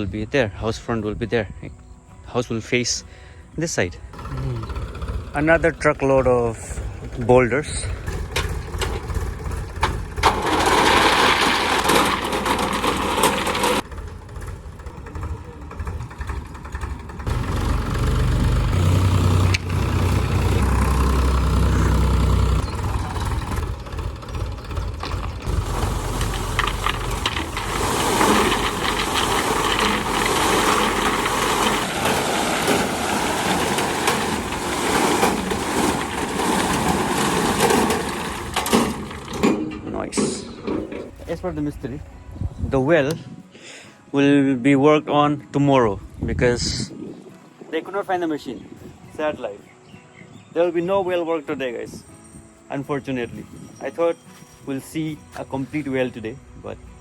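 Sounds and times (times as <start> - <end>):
diesel truck engine revving: 4.0 - 41.4
boulders tipped out: 4.1 - 42.0.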